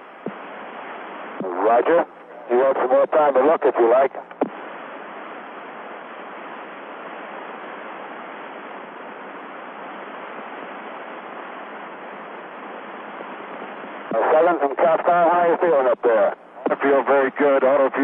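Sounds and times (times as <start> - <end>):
radio static hiss: 0.0 - 18.0
radio click: 0.2 - 0.5, 1.4 - 4.6.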